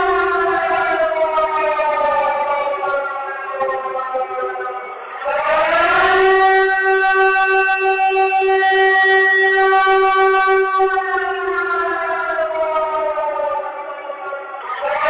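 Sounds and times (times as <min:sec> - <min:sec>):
civil defense siren wail: 0:00.0 - 0:15.0.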